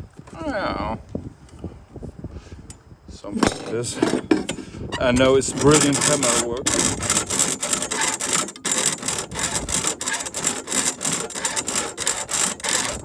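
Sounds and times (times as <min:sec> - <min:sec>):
hand saw cutting metal: 0:03.4 - 0:13.0.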